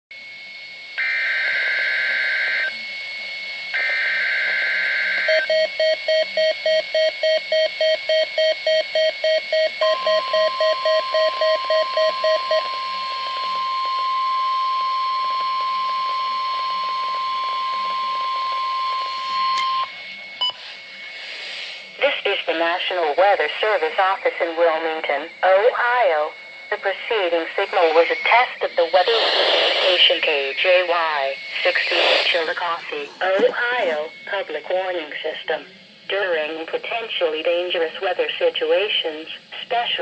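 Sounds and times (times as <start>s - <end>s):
steady warning alarm tone: 0.2s - 40.0s
rapid beeping: 22.0s - 35.5s
screeching digital data bursts: 25.6s - 35.3s.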